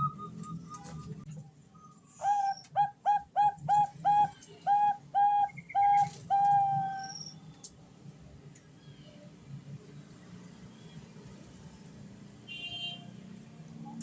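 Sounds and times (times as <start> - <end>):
dove cooing whistled notes: 0.0 - 1.2, 1.8 - 7.4.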